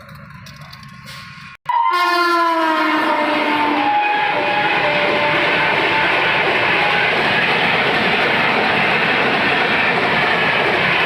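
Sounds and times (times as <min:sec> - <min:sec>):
train wagons rumbling and rattling: 0:00.0 - 0:01.6, 0:03.8 - 0:11.0.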